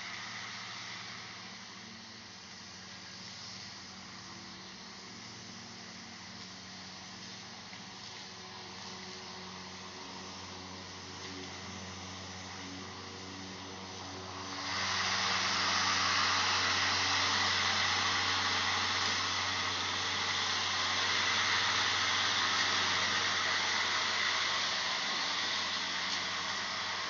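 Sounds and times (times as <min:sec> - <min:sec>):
electric lawn mower running: 0:00.0 - 0:27.0.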